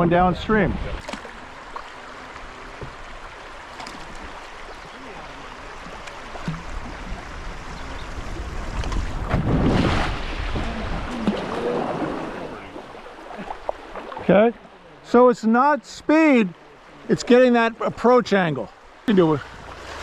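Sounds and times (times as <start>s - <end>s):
rushing whitewater: 0.0s - 20.0s
wind buffeting microphone: 6.4s - 13.0s.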